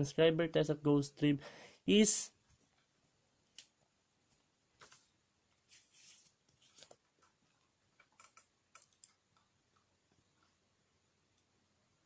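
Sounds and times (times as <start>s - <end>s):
short rustle: 4.8s - 7.0s
keyboard and mouse clicks: 8.0s - 9.9s.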